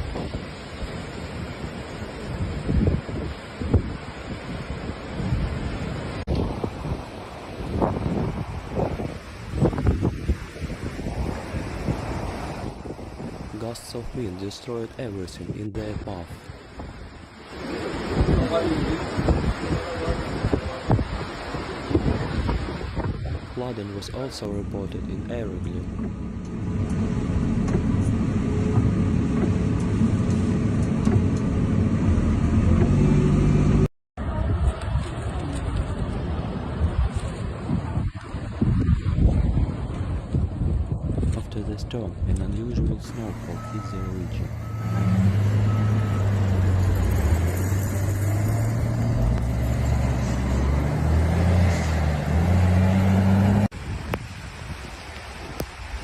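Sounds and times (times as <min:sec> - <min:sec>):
vehicle engine rumble: 0:24.2 - 0:41.4, 0:42.1 - 0:54.1.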